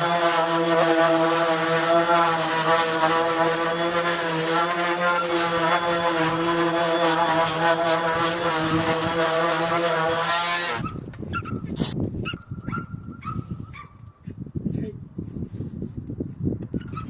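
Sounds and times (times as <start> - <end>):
power tool motor humming: 0.0 - 11.0.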